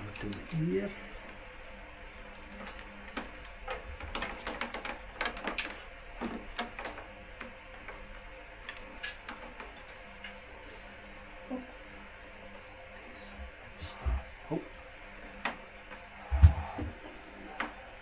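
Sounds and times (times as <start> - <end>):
cable clicking and rustling: 0.0 - 8.0.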